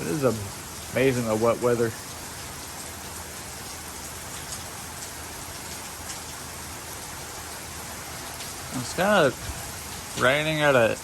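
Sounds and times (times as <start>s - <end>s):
raindrop ticks: 0.0s - 6.4s
steady rain falling: 0.0s - 11.0s.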